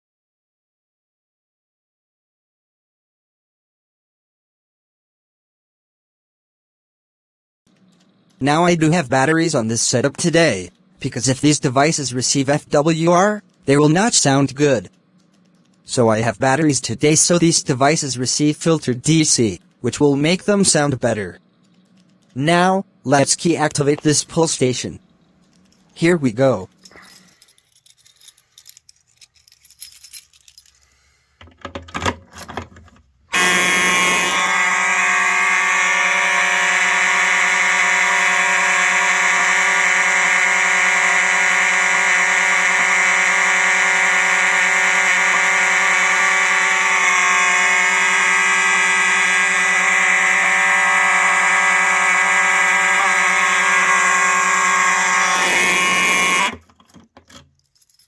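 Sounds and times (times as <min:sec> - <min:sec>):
fire alarm horns buzzing: 0:33.3 - 0:56.7.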